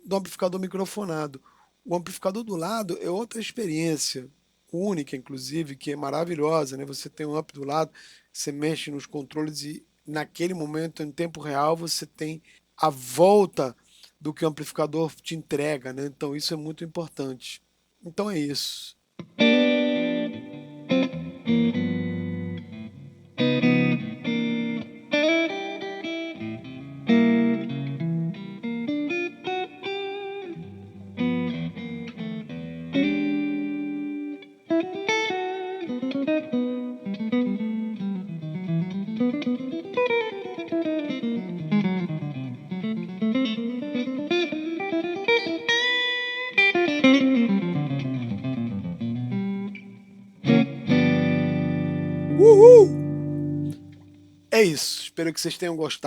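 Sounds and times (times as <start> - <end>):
electric guitar playing: 19.2 - 49.8.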